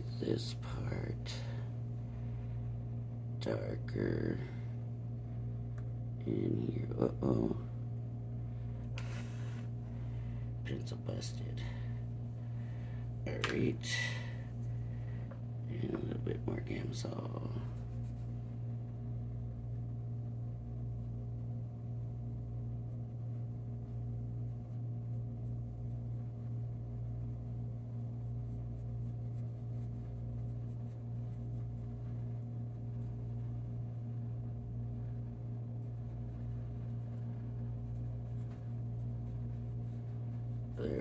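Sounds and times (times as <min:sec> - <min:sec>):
low hum with throbbing: 0:00.0 - 0:41.0
pencil scratching on paper: 0:22.9 - 0:34.2, 0:34.8 - 0:41.0.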